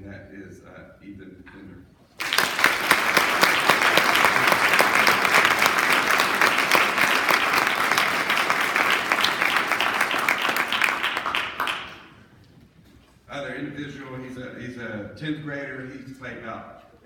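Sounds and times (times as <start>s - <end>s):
audience applauding: 2.2s - 12.2s.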